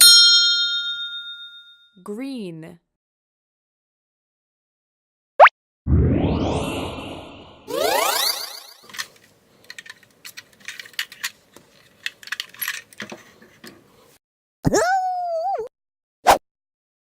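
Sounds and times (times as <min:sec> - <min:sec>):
rising sweep sound effect: 0:05.9 - 0:08.8.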